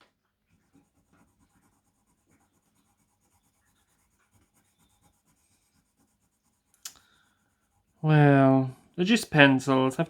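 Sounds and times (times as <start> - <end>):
pencil scratching on paper: 0.4 - 8.1.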